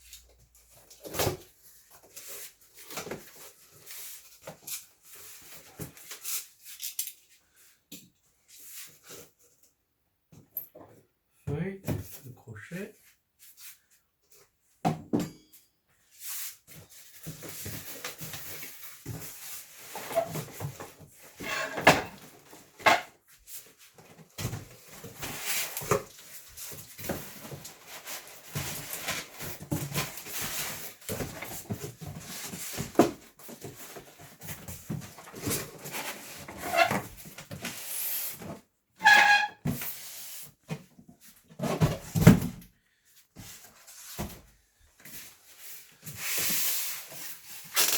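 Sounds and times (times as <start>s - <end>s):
packaging rustling and scraping: 16.2s - 38.7s, 43.4s - 47.9s.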